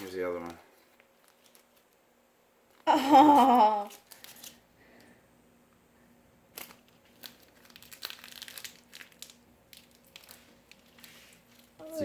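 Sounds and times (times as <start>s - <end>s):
packaging crinkling and rustling: 0.0s - 2.1s, 3.9s - 4.6s, 6.5s - 11.8s.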